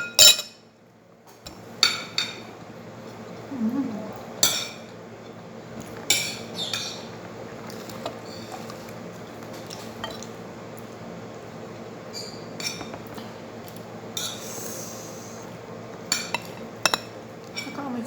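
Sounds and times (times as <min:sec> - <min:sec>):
cutlery clinking on a plate: 0:00.0 - 0:00.6, 0:16.1 - 0:17.8.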